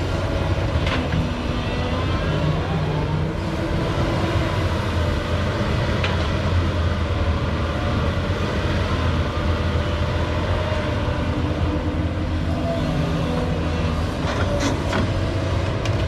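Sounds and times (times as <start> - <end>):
excavator diesel engine droning: 0.0 - 16.0.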